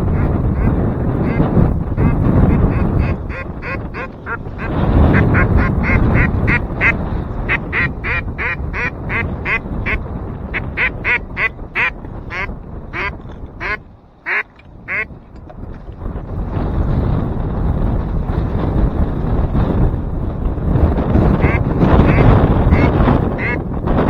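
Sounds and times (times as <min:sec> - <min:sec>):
duck quacks: 0:00.0 - 0:15.1, 0:21.4 - 0:23.6
wind buffeting microphone: 0:00.0 - 0:24.0.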